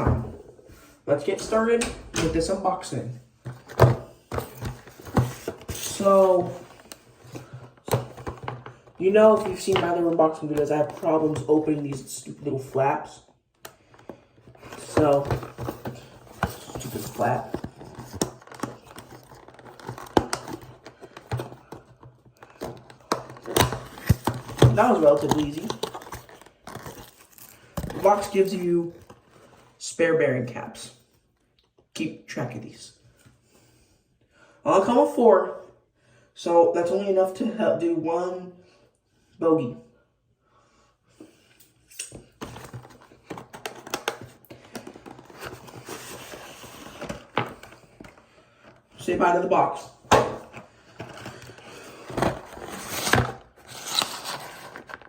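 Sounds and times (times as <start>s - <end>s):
packaging taps and knocks: 13.9s - 28.1s, 42.4s - 48.2s
packaging rustling: 13.9s - 29.6s, 42.4s - 48.8s, 50.1s - 55.0s.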